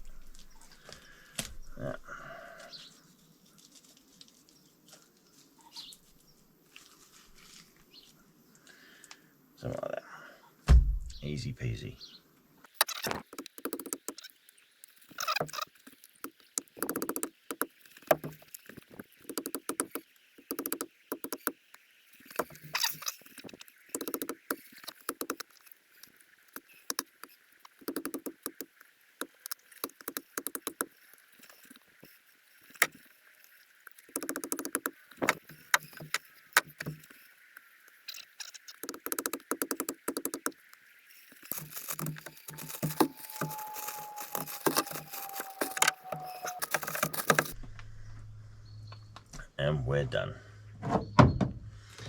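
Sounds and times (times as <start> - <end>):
knife butchering carcass: 41.5 - 47.6.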